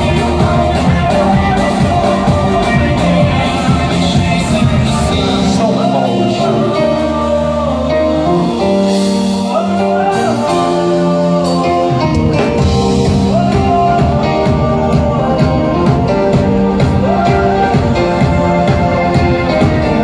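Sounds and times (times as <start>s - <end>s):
steady beat: 0.0s - 5.8s, 12.4s - 20.0s
guitar: 0.0s - 20.0s
person singing: 0.0s - 20.0s.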